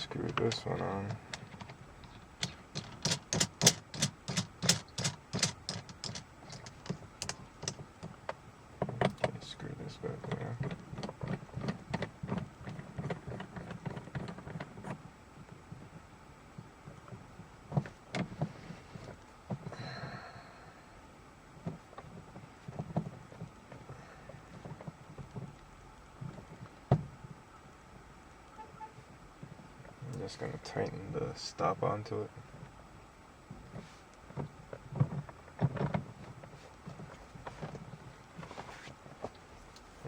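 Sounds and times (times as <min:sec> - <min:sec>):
metal shift knob clicks and knocks: 0:00.0 - 0:09.5, 0:10.2 - 0:15.9, 0:34.3 - 0:38.6.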